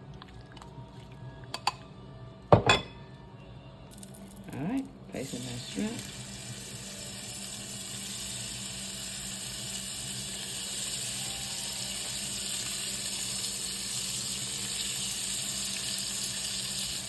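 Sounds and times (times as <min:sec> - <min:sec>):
shrimp sizzling in grease: 0:05.2 - 0:17.0.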